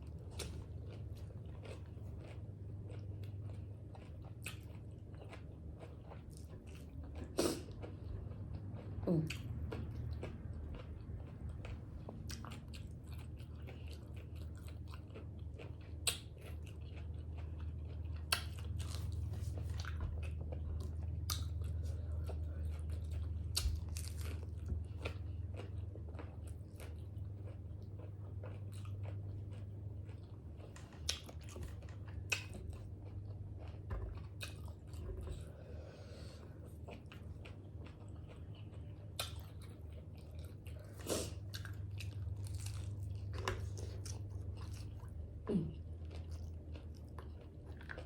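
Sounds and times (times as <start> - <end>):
chewing and crunching tacos: 0.0 - 48.0
steady low hum: 0.0 - 48.0.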